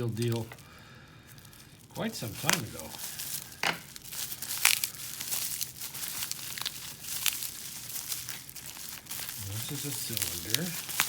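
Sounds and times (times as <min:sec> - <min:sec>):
packaging crinkling and rustling: 0:00.0 - 0:11.0.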